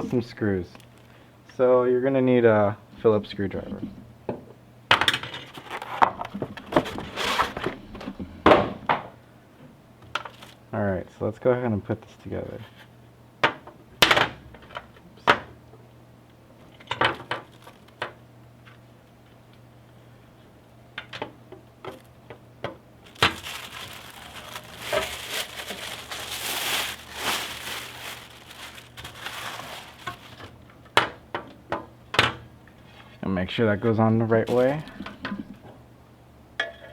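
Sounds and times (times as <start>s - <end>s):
plastic packaging crinkling: 0.7s - 1.2s, 10.2s - 10.6s, 17.2s - 18.0s, 23.0s - 30.6s, 34.5s - 35.0s.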